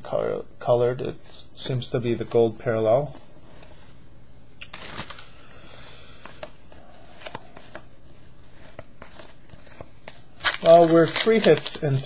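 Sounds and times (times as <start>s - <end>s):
faint room hum: 0.0s - 12.0s
trading cards flipped by hand: 4.6s - 5.3s.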